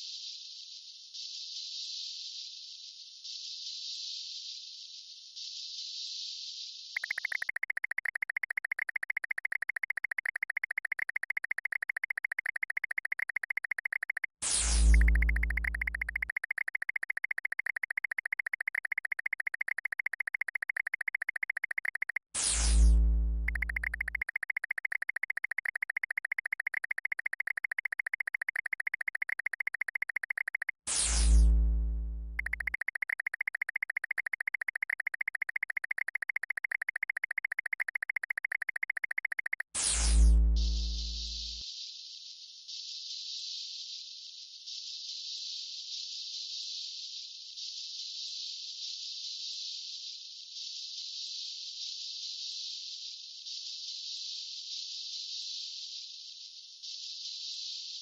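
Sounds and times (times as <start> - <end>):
fast-pulsing electronic buzz: 7.0 - 41.6.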